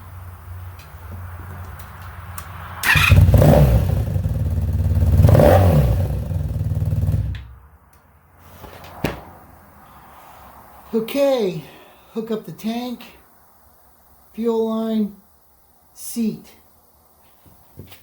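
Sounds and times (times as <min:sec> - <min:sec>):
motorcycle engine idling and revving: 0:00.0 - 0:07.6.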